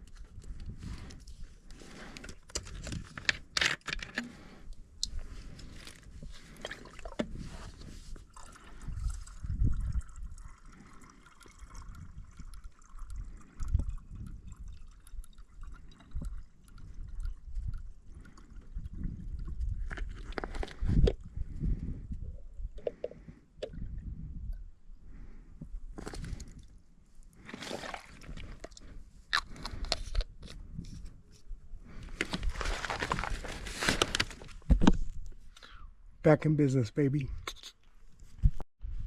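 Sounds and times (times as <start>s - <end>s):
water trickling and dripping: 8.3s - 19.5s.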